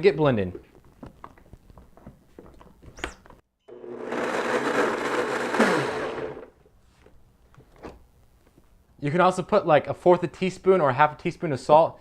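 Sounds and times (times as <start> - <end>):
blender running and winding down: 3.7 - 6.5.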